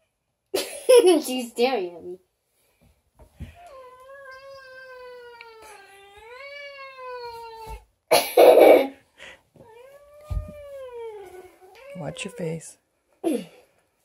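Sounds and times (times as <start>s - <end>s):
cat yowling: 3.6s - 7.8s.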